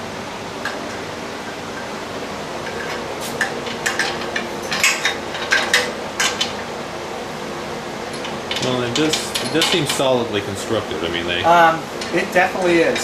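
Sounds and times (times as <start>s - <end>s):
metal hardware clinking: 8.1s - 10.1s.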